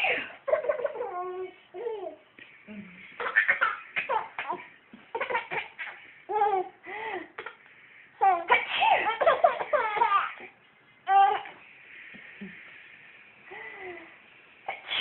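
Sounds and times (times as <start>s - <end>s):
baby laughing: 0.0s - 2.2s, 3.2s - 6.7s, 8.2s - 11.5s.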